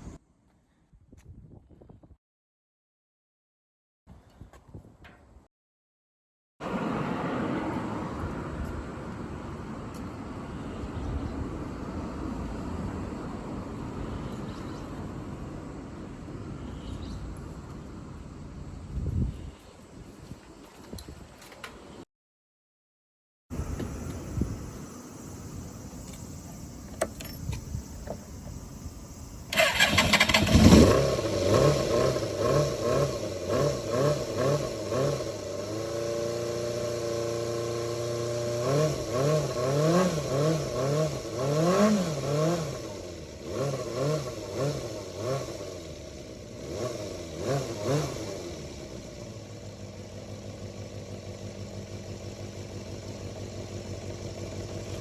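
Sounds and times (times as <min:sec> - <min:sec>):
motorcycle engine revving and idling: 0:25.7 - 0:55.0.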